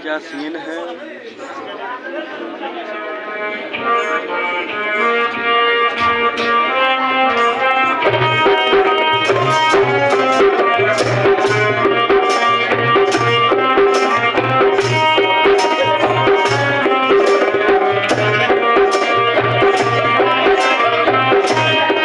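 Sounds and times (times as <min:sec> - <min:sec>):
sustained melody notes: 0:02.9 - 0:22.0
tabla hand-drum beat: 0:07.3 - 0:22.0.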